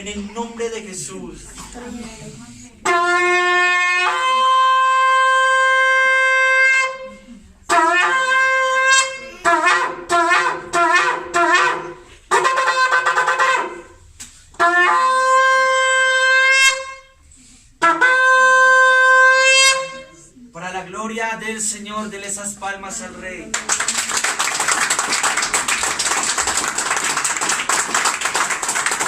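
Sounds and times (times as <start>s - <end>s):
shofar blasts: 2.8s - 20.4s.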